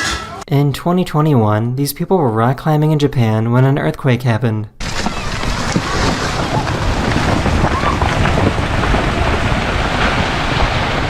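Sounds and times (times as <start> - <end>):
wind buffeting microphone: 4.8 - 11.0.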